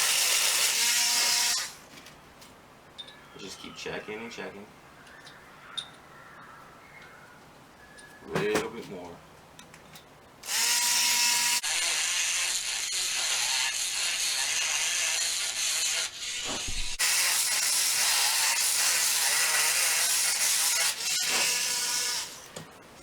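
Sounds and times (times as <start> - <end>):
rotary tool grinding metal: 0.0 - 1.8, 10.4 - 22.5
thump: 16.4 - 17.0.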